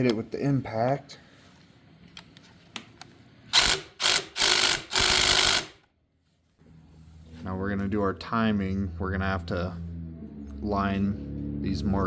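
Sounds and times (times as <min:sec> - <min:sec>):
impact wrench hammering: 0:03.6 - 0:05.8.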